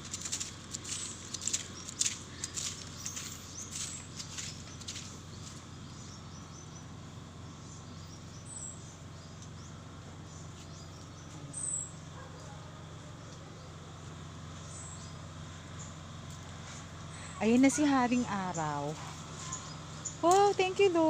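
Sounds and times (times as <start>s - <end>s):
outdoor background noise: 0.0s - 21.0s
high bird chirps: 0.8s - 6.8s.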